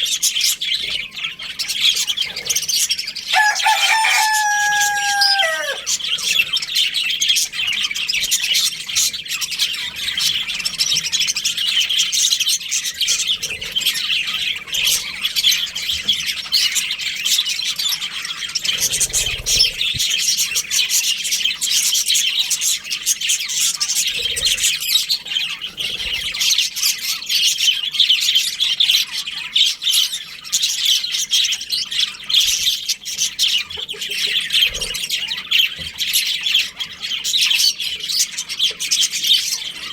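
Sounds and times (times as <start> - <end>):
budgerigars chirping and chattering: 0.0 - 39.9.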